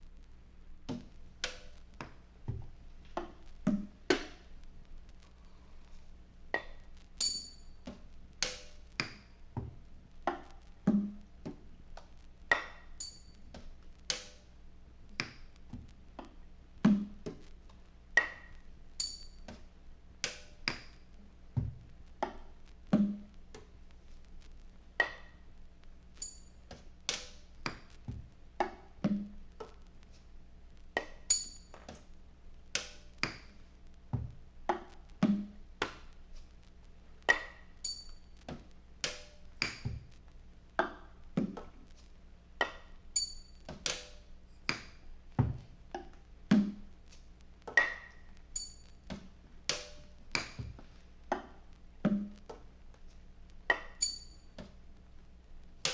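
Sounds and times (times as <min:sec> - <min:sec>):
percussive knocks and clinks: 0:06.6 - 0:09.2, 0:18.2 - 0:19.6, 0:31.0 - 0:31.9.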